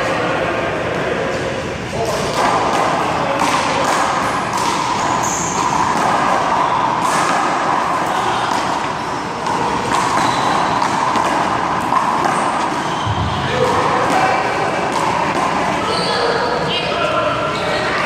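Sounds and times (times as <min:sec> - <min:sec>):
steady background noise: 0:00.0 - 0:18.0
handball slapping: 0:02.0 - 0:15.8.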